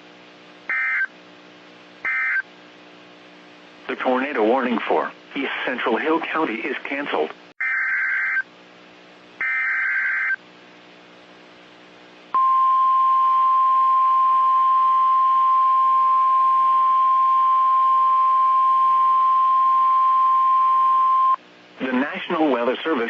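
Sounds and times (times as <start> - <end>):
steady warning alarm tone: 0.7 - 1.1, 2.1 - 2.4, 9.4 - 10.4.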